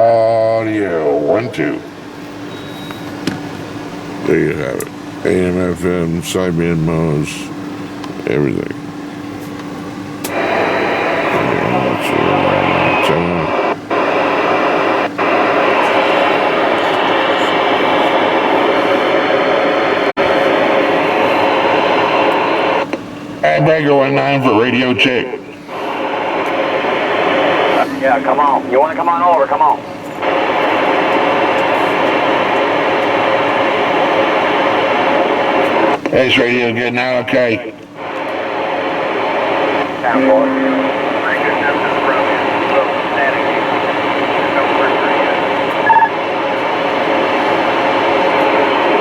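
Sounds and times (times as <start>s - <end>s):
radio static hiss: 10.2s - 49.0s.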